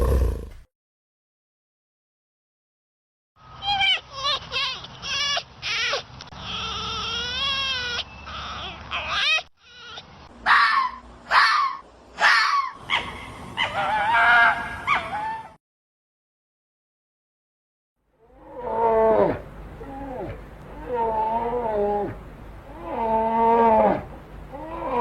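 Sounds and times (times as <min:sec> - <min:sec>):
animal cries: 0:03.6 - 0:15.6, 0:18.3 - 0:25.0.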